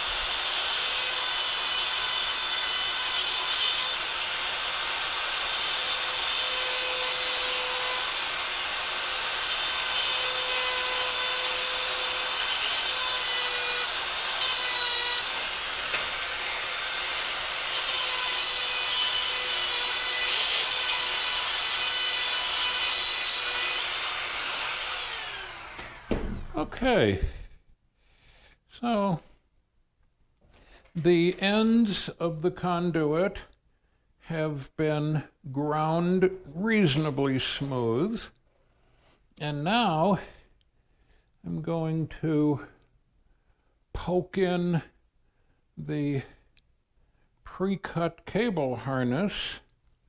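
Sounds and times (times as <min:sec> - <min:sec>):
rotary tool grinding steel: 0:00.0 - 0:26.8.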